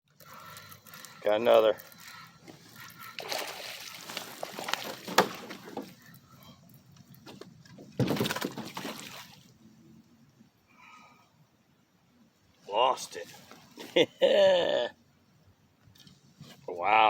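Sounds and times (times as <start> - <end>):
fish splashing in water: 2.8 - 6.1, 8.0 - 9.5.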